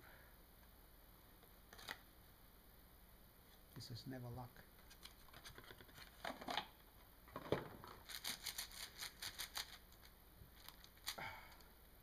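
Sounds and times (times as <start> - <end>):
puzzle cube plastic clicks: 8.0 - 11.2.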